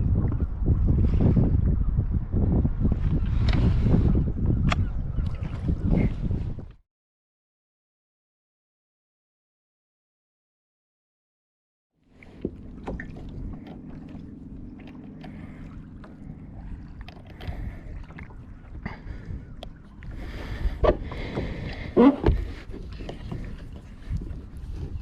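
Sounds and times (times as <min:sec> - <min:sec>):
water slapping against kayak hull: 0:12.2 - 0:25.0.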